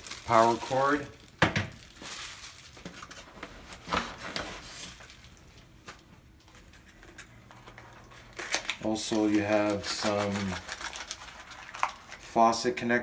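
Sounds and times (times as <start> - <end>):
plastic packaging rustling: 0.0 - 12.3.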